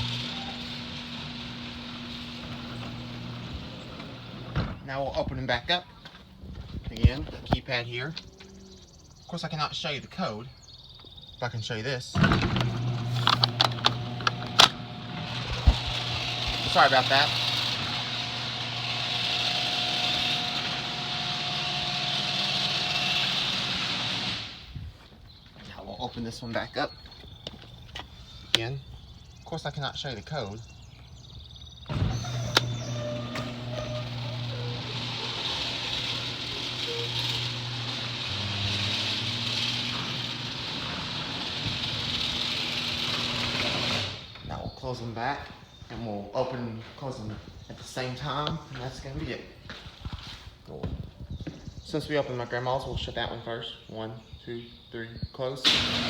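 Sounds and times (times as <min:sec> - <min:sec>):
garage door opener motor whining: 0:00.0 - 0:04.8, 0:12.2 - 0:24.8, 0:31.8 - 0:44.5, 0:55.6 - 0:56.0
hissing whir of screw drive: 0:12.4 - 0:14.8, 0:31.9 - 0:44.3.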